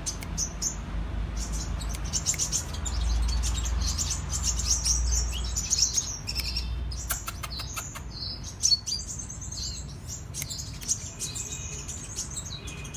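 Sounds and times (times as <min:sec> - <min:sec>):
sunbird chirping: 0:00.0 - 0:12.9.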